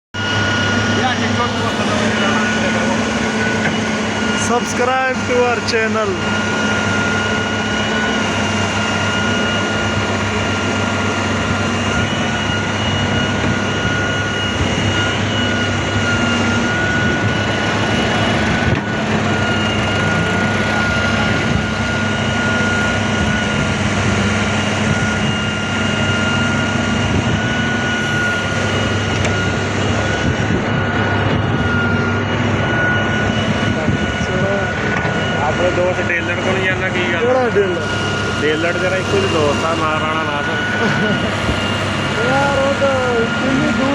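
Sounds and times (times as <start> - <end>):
excavator engine drone: 0.1 - 43.9
high-pitched whine: 0.2 - 43.9.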